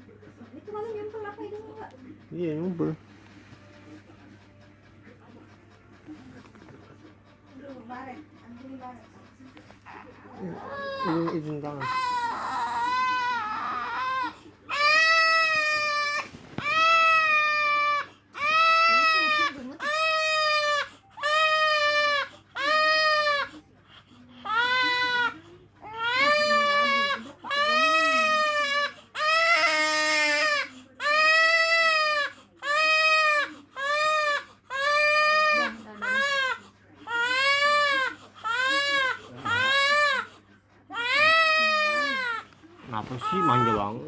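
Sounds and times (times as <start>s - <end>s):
baby crying: 9.9s - 23.6s, 24.4s - 40.3s, 40.9s - 42.4s, 43.0s - 44.0s.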